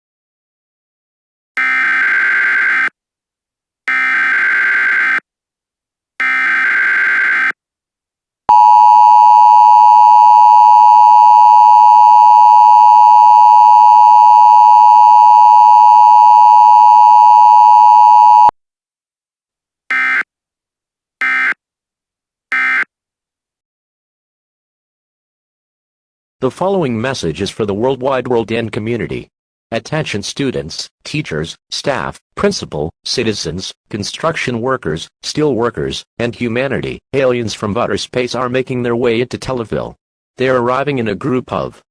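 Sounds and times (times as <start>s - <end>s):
two-tone attention signal: 8.5s - 18.5s.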